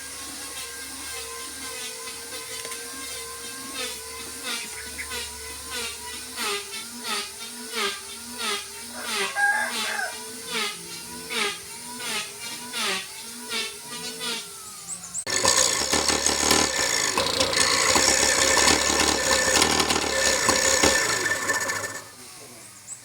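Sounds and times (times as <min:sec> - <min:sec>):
woodturning tool scraping wood on lathe: 0:15.2 - 0:22.4.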